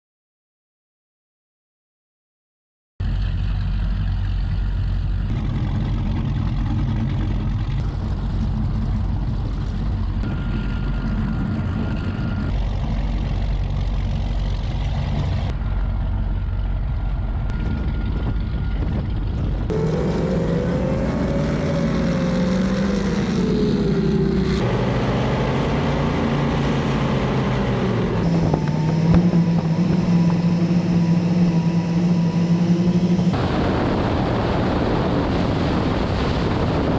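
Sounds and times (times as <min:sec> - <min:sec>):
powerboat engines running: 0:03.0 - 0:36.9
wind rush: 0:17.5 - 0:36.9.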